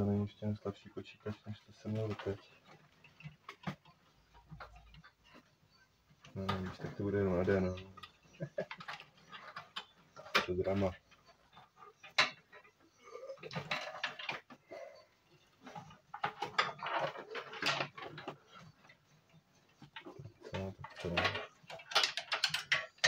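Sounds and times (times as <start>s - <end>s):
cables and plastic parts rattling: 0.0s - 23.0s.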